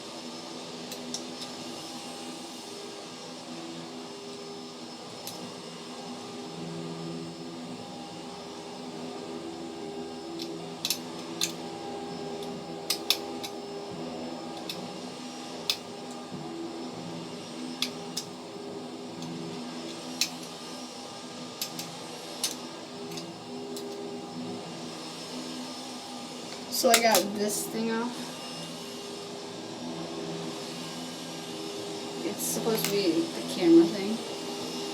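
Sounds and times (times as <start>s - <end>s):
steady background hum: 0.0s - 34.9s
small plastic parts clicking: 10.4s - 11.6s, 21.6s - 24.0s.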